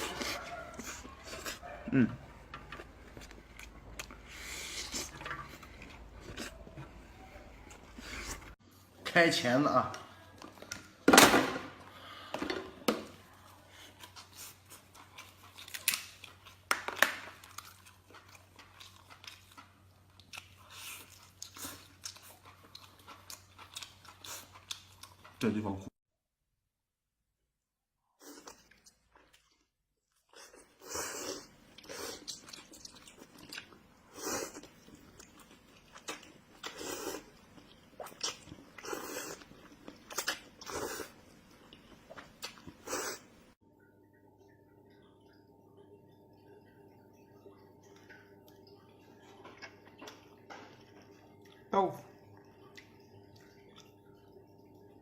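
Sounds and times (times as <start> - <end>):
crunching and chewing: 0.0 - 8.6, 13.7 - 25.5, 28.2 - 43.4
person slurping and sucking food: 4.0 - 5.8, 30.6 - 32.6, 38.0 - 41.2, 42.4 - 43.3
eating clicks and crunches: 14.1 - 25.4.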